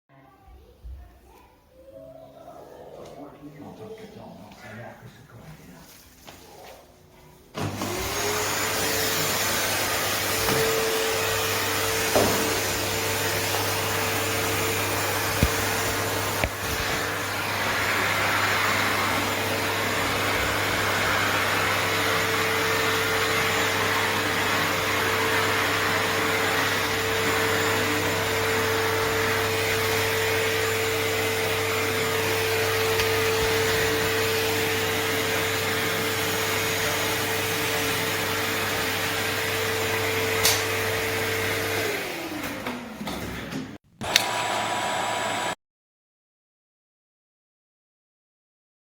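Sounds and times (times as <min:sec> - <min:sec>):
vacuum cleaner running: 0:07.5 - 0:45.6
vacuum switch click: 0:44.0 - 0:44.4.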